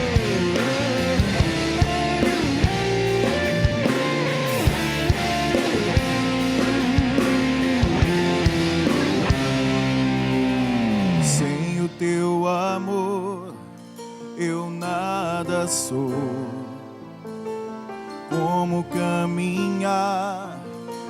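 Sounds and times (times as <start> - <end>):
drum kit: 0.0 - 12.9
lead guitar melody: 0.0 - 21.0.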